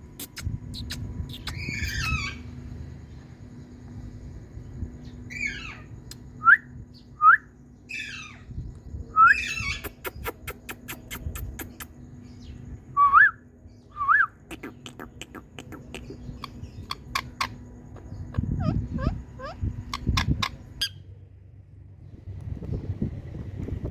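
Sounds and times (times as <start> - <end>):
parakeet chattering calls: 0.2 - 2.6, 5.3 - 6.0, 7.9 - 8.5, 9.3 - 12.4, 14.4 - 21.1
parakeet whistled calls: 0.8 - 2.5, 5.3 - 8.5, 9.1 - 11.9, 16.0 - 21.0.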